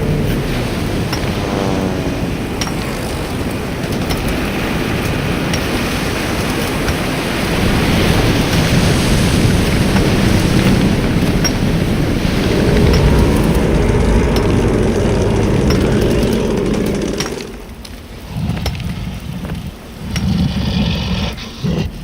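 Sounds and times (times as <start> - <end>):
low rumble: 0.0 - 4.5, 7.5 - 20.3
steady hissing wash: 0.0 - 22.0
faint clicks: 9.6 - 22.0.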